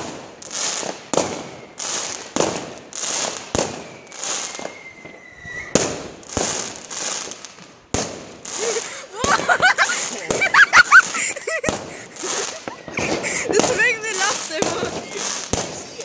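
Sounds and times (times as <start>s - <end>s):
fireworks banging and crackling: 0.0s - 16.0s
faint thin whistle: 3.8s - 5.7s.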